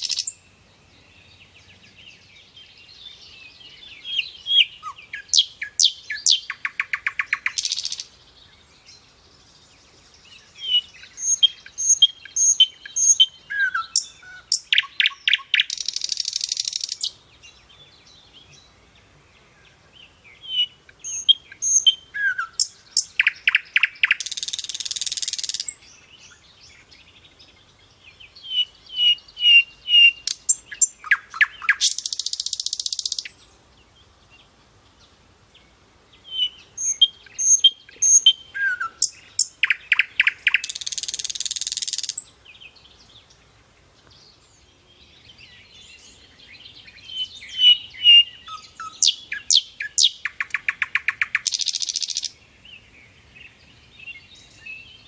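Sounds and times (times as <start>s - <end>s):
nightingale singing: 0.0s - 55.0s.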